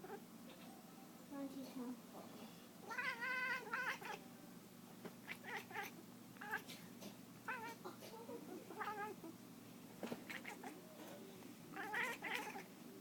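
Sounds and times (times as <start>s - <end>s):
cat warbling calls: 2.9s - 4.2s, 5.2s - 6.6s, 7.5s - 7.9s, 8.7s - 9.3s, 10.3s - 10.8s, 11.7s - 12.7s.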